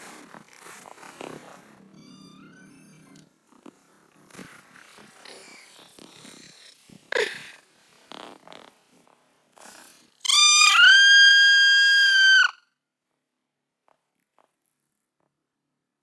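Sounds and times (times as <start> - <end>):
scratching and rustling: 0.0 - 1.9
kitten crying: 10.3 - 12.6.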